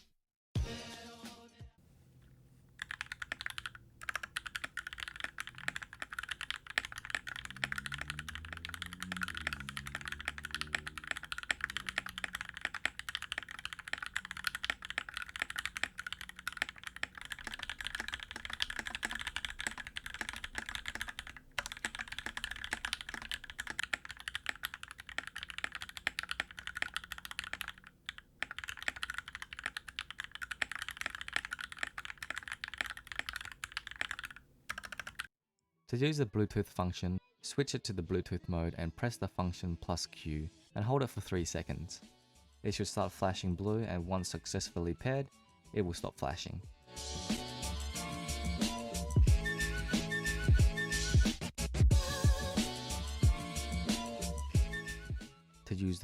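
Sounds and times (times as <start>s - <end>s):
mechanical keyboard typing: 2.1s - 35.3s.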